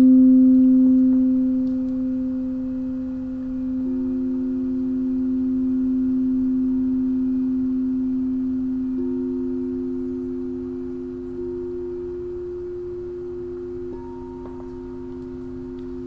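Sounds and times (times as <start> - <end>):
high singing bowl ringing: 0.0 - 16.0
low singing bowl ringing: 0.0 - 16.0.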